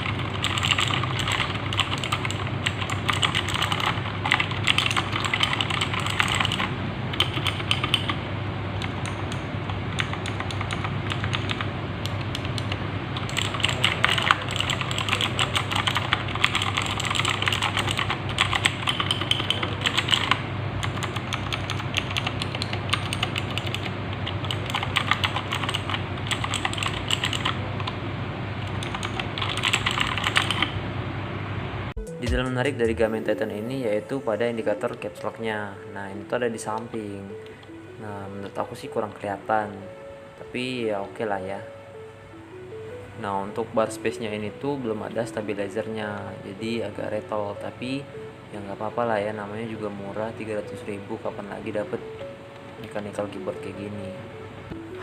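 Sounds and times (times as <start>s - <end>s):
mechanical keyboard typing: 0.0s - 8.2s, 8.8s - 28.0s, 28.6s - 30.8s
low steady hum: 0.0s - 55.0s.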